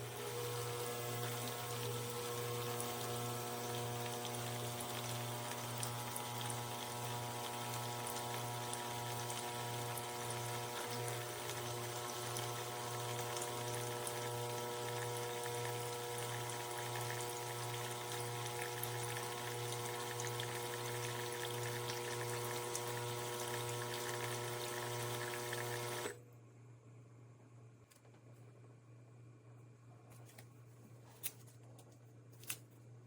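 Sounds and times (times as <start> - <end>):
espresso machine pump humming: 0.0 - 26.2.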